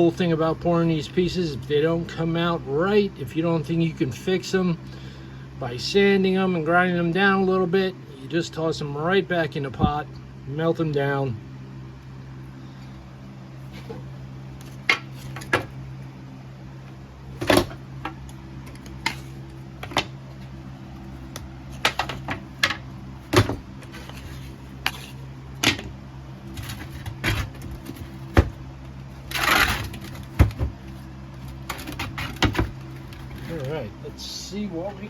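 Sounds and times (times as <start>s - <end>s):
steady low hum: 0.0s - 35.0s
scraping rustle: 23.3s - 25.4s, 26.4s - 28.4s, 29.0s - 33.8s.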